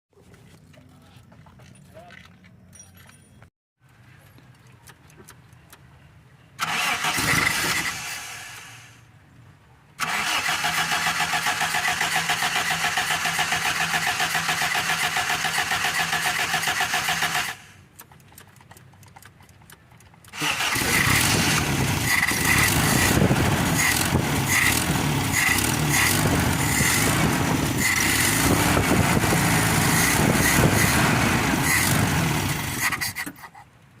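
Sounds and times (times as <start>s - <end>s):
engine starter cranking: 6.6s - 8.8s, 10.0s - 17.7s, 20.2s - 29.2s, 31.6s - 33.5s
engine running unevenly: 20.3s - 33.0s.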